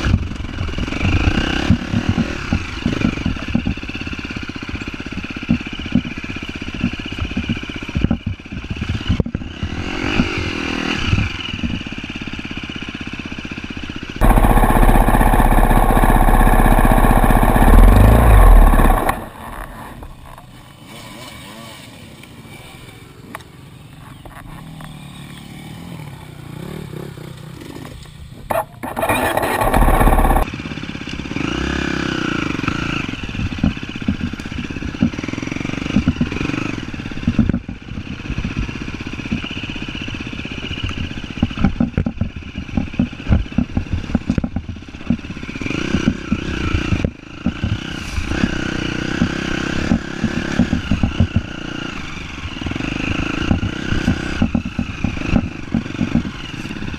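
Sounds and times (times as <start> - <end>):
off-road vehicle engine running: 0.0 - 56.9
loud rush of noise: 14.2 - 20.4.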